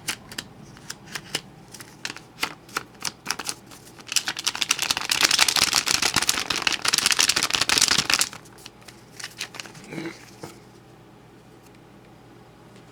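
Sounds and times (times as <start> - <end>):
paper bills rustling and crackling: 0.0 - 9.9.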